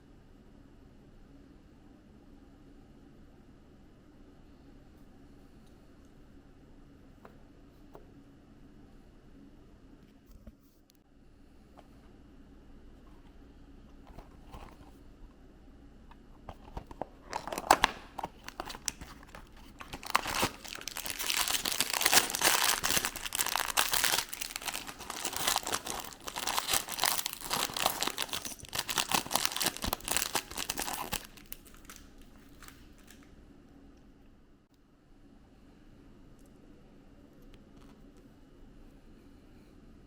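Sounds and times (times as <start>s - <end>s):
packaging crinkling and tearing: 16.5s - 33.3s.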